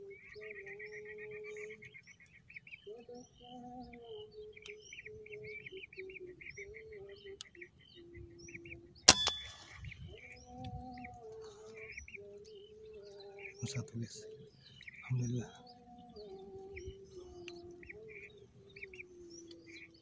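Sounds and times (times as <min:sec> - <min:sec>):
birds chirping: 0:00.0 - 0:20.0
gunshot with ringing tail: 0:09.1 - 0:10.2.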